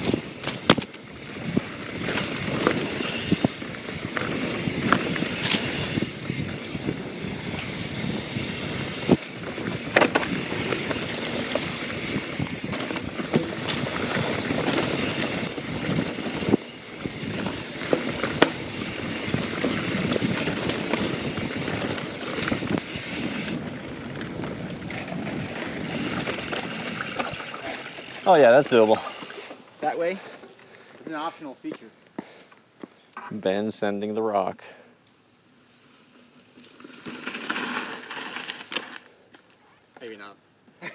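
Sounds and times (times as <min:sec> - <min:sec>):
rush of bike tyres and wind: 0:00.0 - 0:30.2, 0:35.6 - 0:39.1
bike knocking on rocks: 0:00.1 - 0:03.5, 0:09.0 - 0:16.5, 0:17.3 - 0:18.7.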